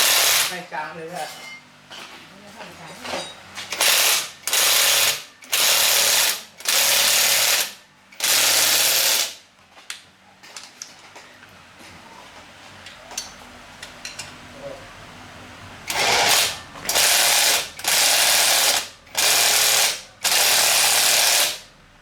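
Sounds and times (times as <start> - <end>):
power tool bursts: 0.0 - 0.6, 3.7 - 9.4, 15.9 - 21.6.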